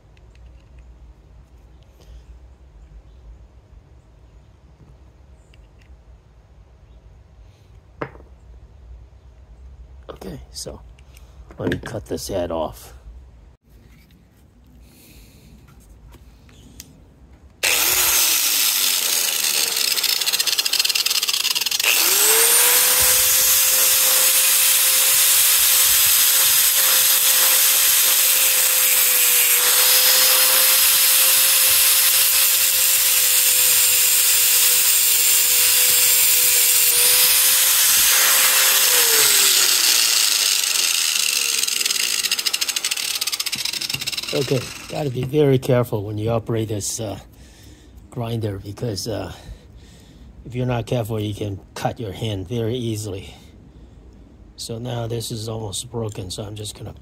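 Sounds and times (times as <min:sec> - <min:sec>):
angle grinder cutting metal: 0:17.6 - 0:45.3.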